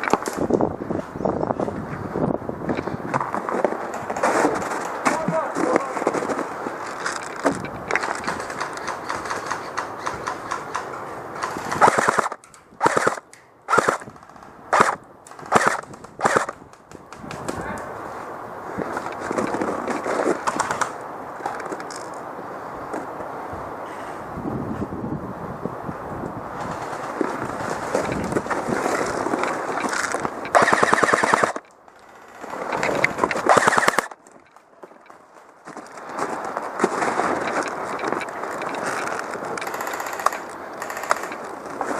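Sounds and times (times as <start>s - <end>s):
rapid clicks: 7.1s - 17.6s, 29.4s - 35.2s, 37.4s - 41.6s
airsoft rifle full-auto bursts: 11.4s - 14.1s, 14.7s - 16.6s, 30.5s - 32.4s, 33.4s - 34.2s, 39.6s - 41.3s.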